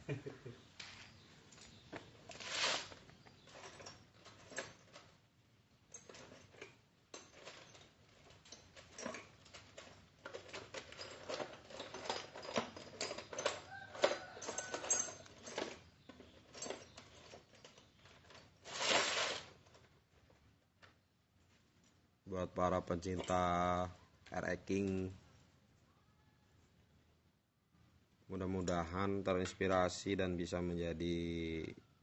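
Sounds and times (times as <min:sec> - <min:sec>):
metal tools clicking and rattling: 0:01.6 - 0:19.6, 0:22.9 - 0:23.8.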